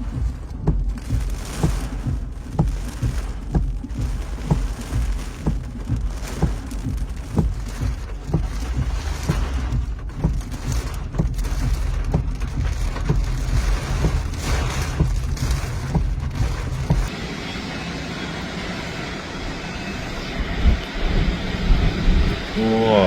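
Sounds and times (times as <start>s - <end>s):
low thumps: 0.0s - 17.1s
heavy rain: 0.0s - 23.0s
strong wind: 16.2s - 23.0s.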